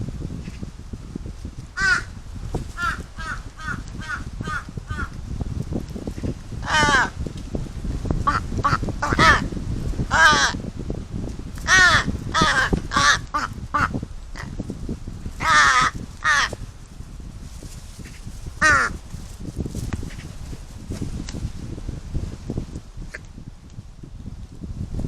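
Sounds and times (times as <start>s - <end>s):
wind rumble on microphone: 0.0s - 25.0s
crows cawing: 1.8s - 2.1s, 2.8s - 5.2s, 6.6s - 7.1s, 8.3s - 9.4s, 10.1s - 10.6s, 11.6s - 14.5s, 15.4s - 16.6s, 18.6s - 19.0s.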